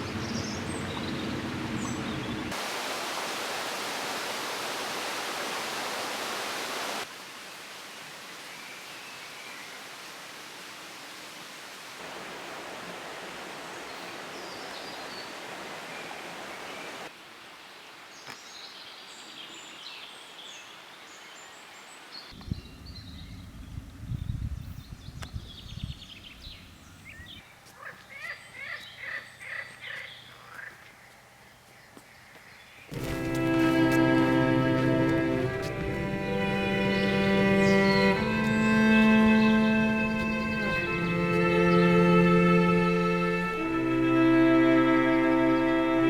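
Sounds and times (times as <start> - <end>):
birds chirping: 0.0 - 2.6, 21.4 - 46.0
rushing water of stream: 0.0 - 19.2, 32.9 - 46.0.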